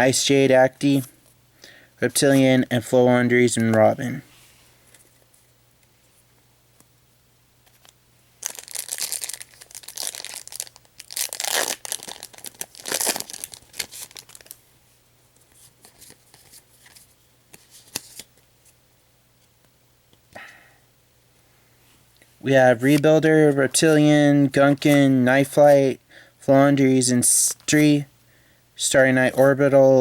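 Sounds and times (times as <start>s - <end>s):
foil wrapper tearing and crinkling: 7.8s - 14.6s.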